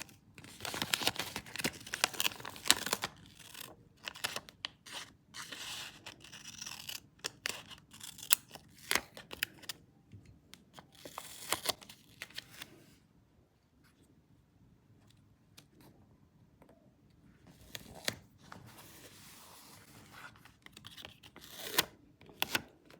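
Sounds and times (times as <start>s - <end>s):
paper rustling: 0.0s - 3.1s.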